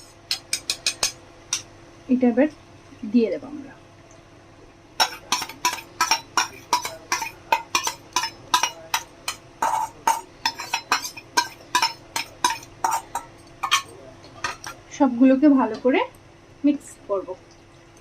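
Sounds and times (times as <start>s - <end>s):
metal spatula clinking on pan: 5.0s - 14.8s.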